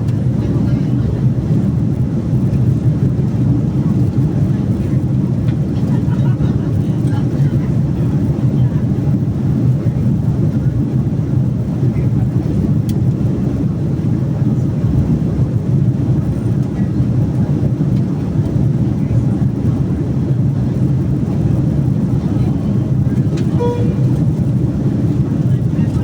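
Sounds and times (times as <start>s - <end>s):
jet engine noise in cabin: 0.0s - 26.0s
rushing airflow: 19.7s - 25.9s.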